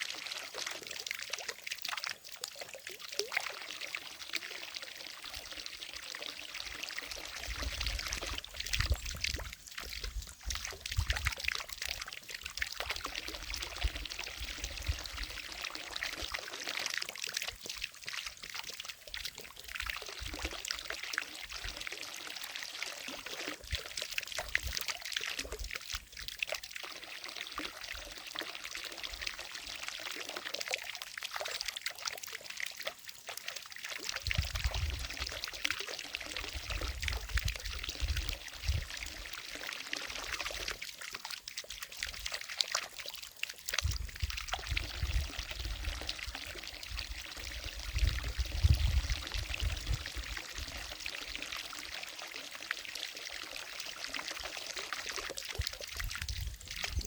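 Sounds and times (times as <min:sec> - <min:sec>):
fountain water splashing: 0:00.0 - 0:09.0.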